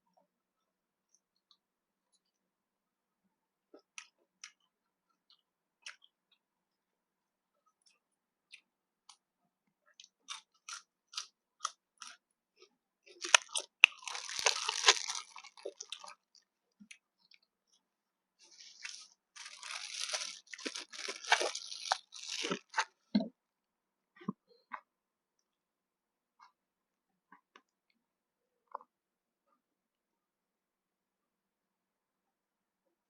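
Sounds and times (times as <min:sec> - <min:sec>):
person crunching food: 0:09.9 - 0:12.3, 0:13.1 - 0:17.5, 0:18.4 - 0:23.0.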